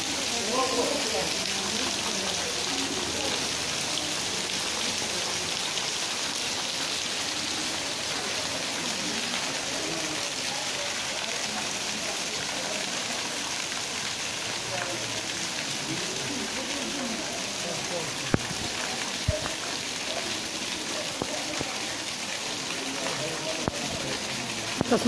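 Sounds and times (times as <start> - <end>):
heavy rain pouring: 0.0 - 25.0.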